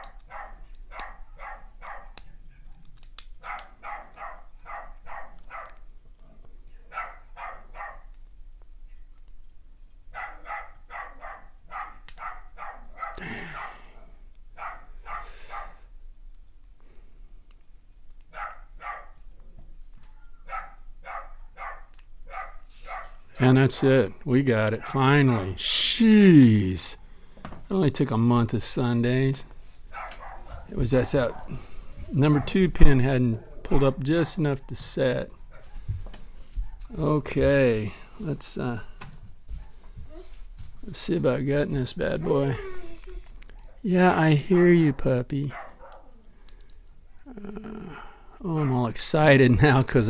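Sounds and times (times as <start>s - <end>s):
dog barking: 0.0s - 2.2s, 3.4s - 5.8s, 6.9s - 8.1s, 10.1s - 15.9s, 18.3s - 19.2s, 20.4s - 23.2s, 24.8s - 25.6s, 29.9s - 32.6s, 35.5s - 35.9s, 36.6s - 36.9s, 45.5s - 46.2s, 48.6s - 48.9s.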